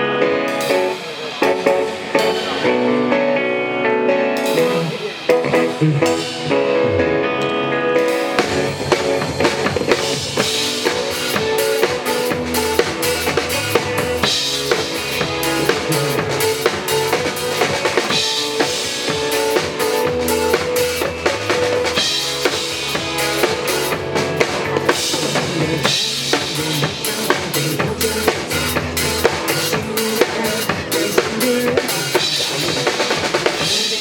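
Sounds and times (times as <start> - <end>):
pop band playing: 0.0 - 34.0
drum kit beat: 0.5 - 3.0, 4.4 - 7.2, 8.0 - 34.0.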